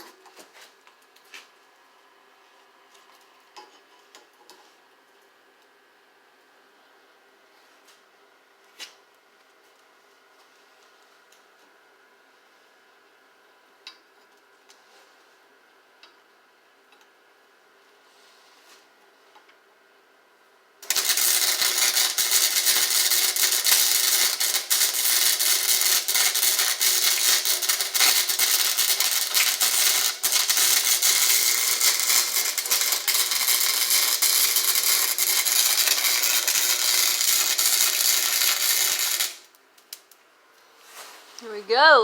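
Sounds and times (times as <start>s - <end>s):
electric welding arc crackling: 20.8s - 39.5s.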